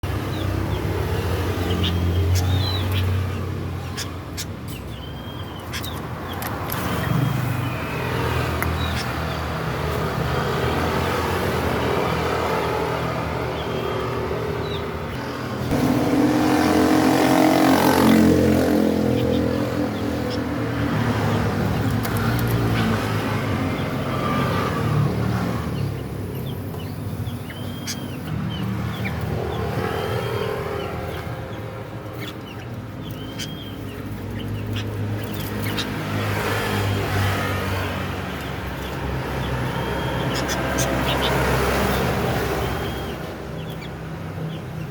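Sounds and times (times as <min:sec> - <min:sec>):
vehicles passing by: 0:00.0 - 0:44.9.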